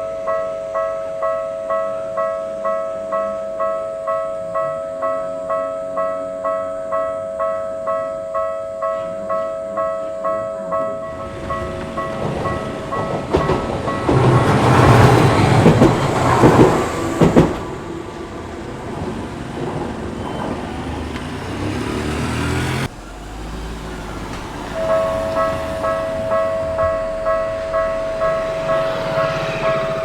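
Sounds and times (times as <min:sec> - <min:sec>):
level crossing warning bell: 0:00.0 - 0:22.8, 0:23.8 - 0:30.0
train wheels rumbling: 0:10.9 - 0:30.0
wheels clacking over rail joints: 0:11.0 - 0:30.0
train motor whine: 0:11.1 - 0:30.0.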